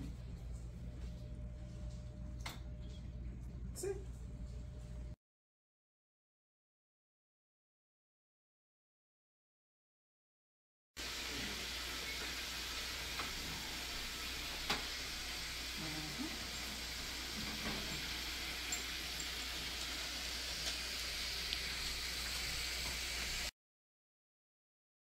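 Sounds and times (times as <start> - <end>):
chicken frying in hot oil: 11.0 - 23.5.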